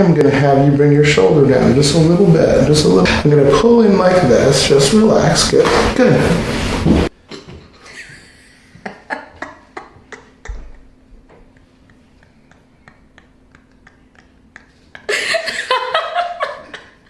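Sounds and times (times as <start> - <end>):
person speaking: 0.0 - 6.6.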